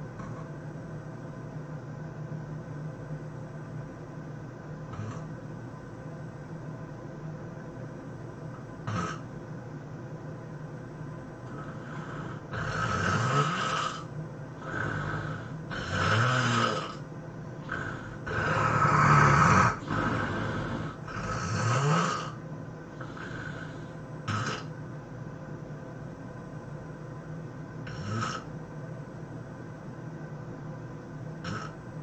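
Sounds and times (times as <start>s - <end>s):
low room hum: 0.0s - 32.0s
person snoring: 4.9s - 5.3s, 8.8s - 9.2s, 11.5s - 17.0s, 17.6s - 24.7s, 27.9s - 28.5s, 31.4s - 31.8s
quiet breaths: 4.9s - 5.6s, 11.4s - 24.8s.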